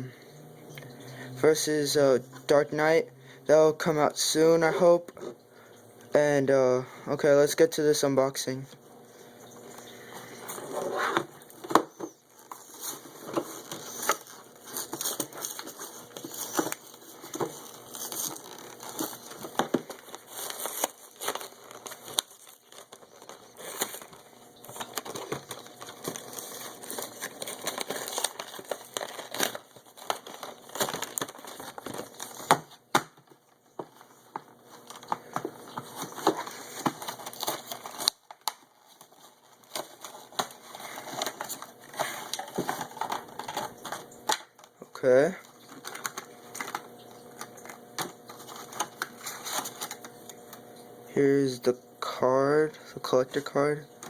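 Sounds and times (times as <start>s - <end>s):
packaging crinkling: 9.1s - 50.9s.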